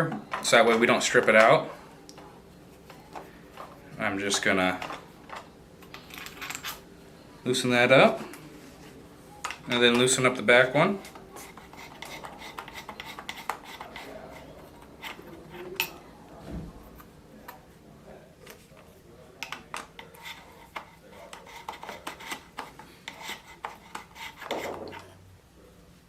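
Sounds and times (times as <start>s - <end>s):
light metal scraping: 10.9s - 16.1s, 18.6s - 25.2s.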